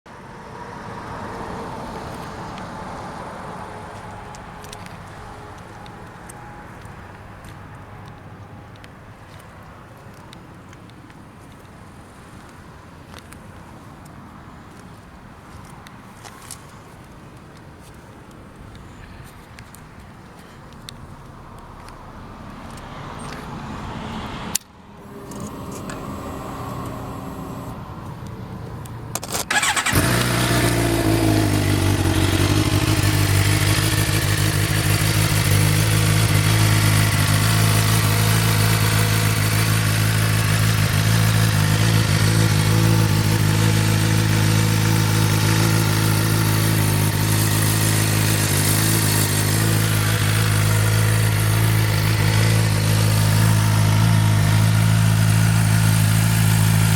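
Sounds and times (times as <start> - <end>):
motorcycle engine starting: 25.0 - 27.8, 29.1 - 56.9
motorcycle engine idling: 29.2 - 56.9.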